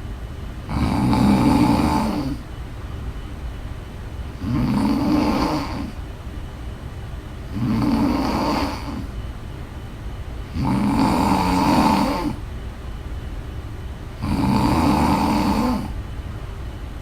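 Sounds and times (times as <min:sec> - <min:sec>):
person snoring: 0:00.7 - 0:02.4, 0:04.4 - 0:06.0, 0:07.5 - 0:09.1, 0:10.5 - 0:12.4, 0:14.2 - 0:16.0.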